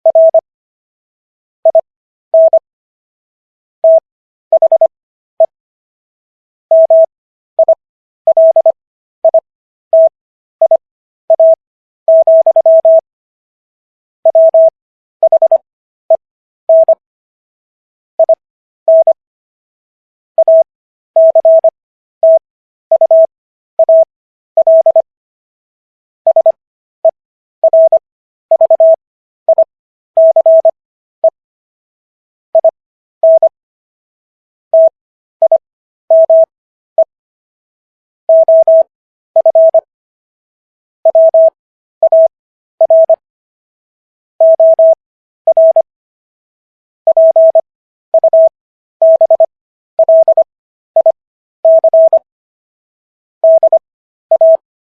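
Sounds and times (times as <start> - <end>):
morse code beeps: 0.0 - 0.4, 2.4 - 2.6, 3.8 - 4.9, 6.7 - 9.4, 10.0 - 13.0, 14.3 - 17.0, 18.2 - 19.2, 20.4 - 25.0, 26.3 - 31.4, 32.6 - 33.6, 34.8 - 37.1, 38.3 - 39.9, 41.1 - 43.2, 44.4 - 45.9, 47.1 - 52.3, 53.4 - 54.6.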